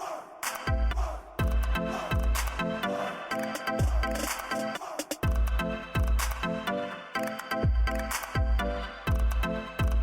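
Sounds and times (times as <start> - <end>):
electronic music with beat: 0.0 - 10.0
deep kick drums: 0.7 - 2.6, 3.8 - 4.2, 5.2 - 6.4, 7.6 - 10.0
sustained synth chord: 5.3 - 10.0.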